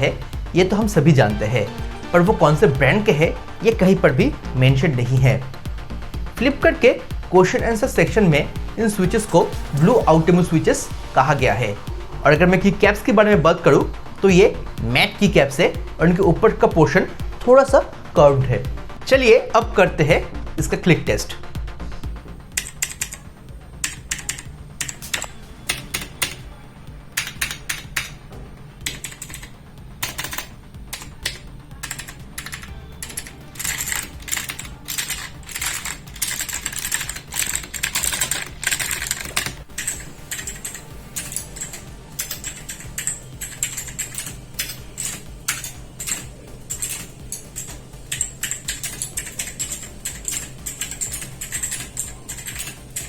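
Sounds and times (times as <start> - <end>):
clicky keyboard typing: 22.5 - 28.2, 28.8 - 53.0.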